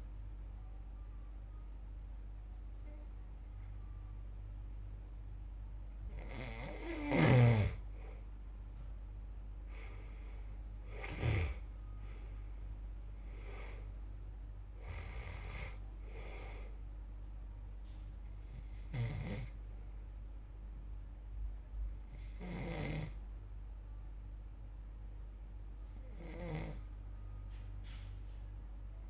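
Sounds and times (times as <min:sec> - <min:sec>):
person snoring: 0:06.1 - 0:07.8, 0:10.9 - 0:11.7, 0:14.8 - 0:16.7, 0:18.5 - 0:19.6, 0:22.2 - 0:23.2, 0:26.0 - 0:26.9.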